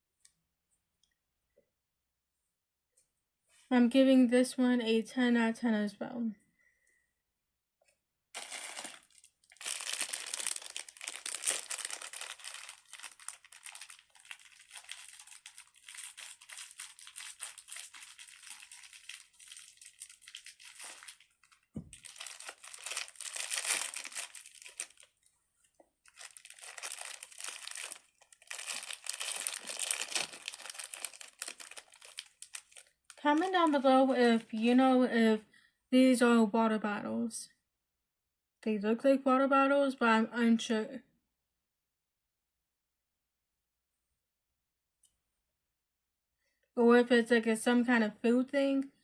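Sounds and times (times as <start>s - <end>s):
plastic packaging crinkling: 8.4s - 25.3s, 26.0s - 33.8s.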